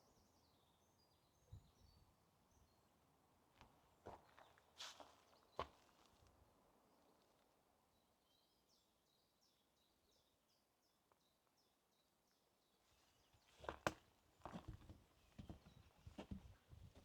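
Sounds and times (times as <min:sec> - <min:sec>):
small bird singing: 0:00.0 - 0:02.8
footsteps on forest path: 0:04.0 - 0:06.2, 0:13.6 - 0:17.0.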